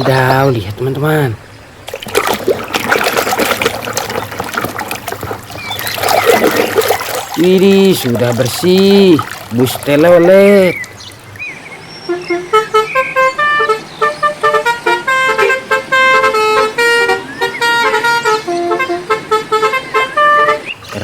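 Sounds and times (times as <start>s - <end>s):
musical air horn melody: 12.1s - 20.8s.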